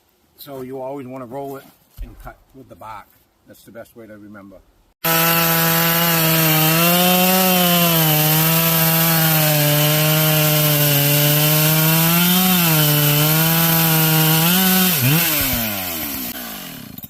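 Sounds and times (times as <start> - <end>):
chainsaw cutting wood: 5.0 - 17.0.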